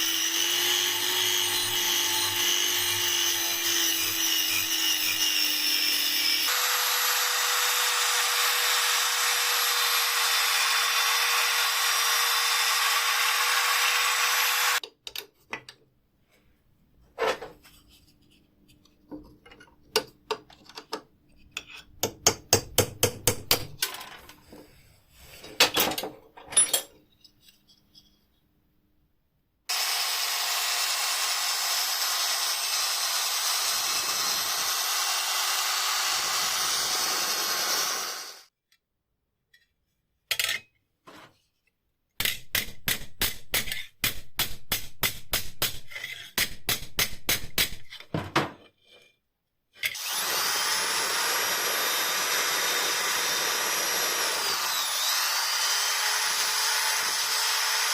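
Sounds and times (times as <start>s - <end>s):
power tool running: 0.0s - 14.8s, 29.7s - 38.5s, 50.0s - 57.9s.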